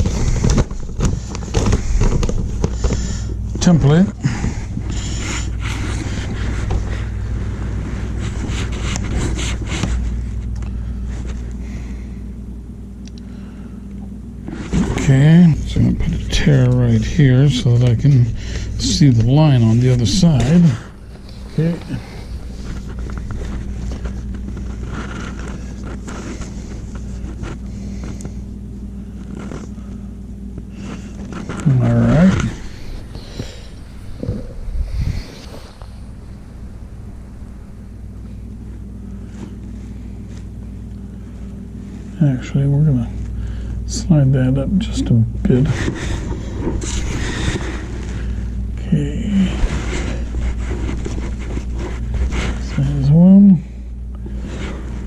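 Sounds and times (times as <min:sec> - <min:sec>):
steady low hum: 0:00.0 - 0:55.0
steady low rumble: 0:00.0 - 0:55.0
paper rustling: 0:16.8 - 0:28.3.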